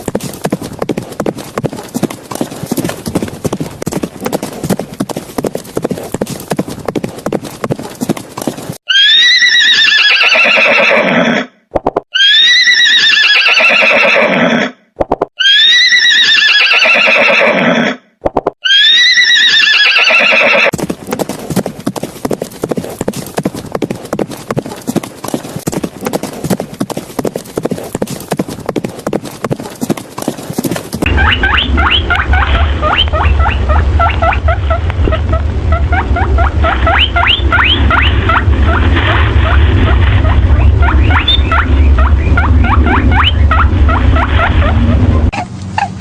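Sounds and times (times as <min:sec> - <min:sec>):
hooves clip-clopping: 0:00.0 - 0:08.8, 0:20.6 - 0:45.9
horse whinnying: 0:08.9 - 0:14.8, 0:15.4 - 0:20.7.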